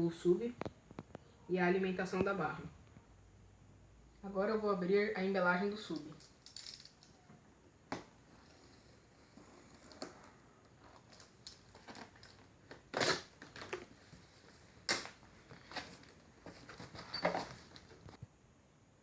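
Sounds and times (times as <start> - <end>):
packaging rustling: 8.3 - 18.2.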